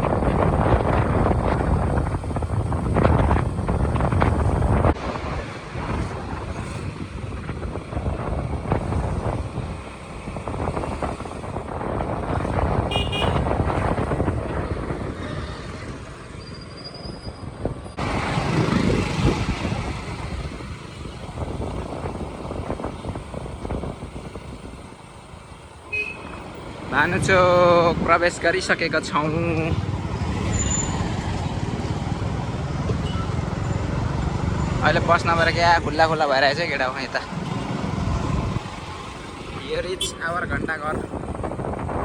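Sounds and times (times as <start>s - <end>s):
vehicle horn toot: 12.9s - 13.5s, 25.9s - 26.4s.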